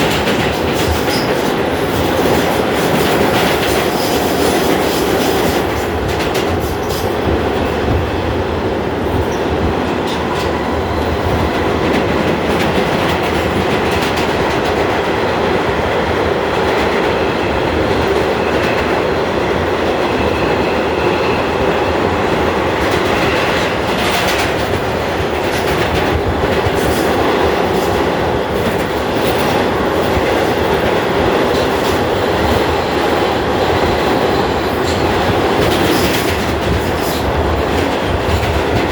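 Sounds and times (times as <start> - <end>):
wheels clacking over rail joints: 0.0 - 8.2, 9.0 - 15.3, 22.8 - 38.9
subway train rumble: 0.0 - 38.9.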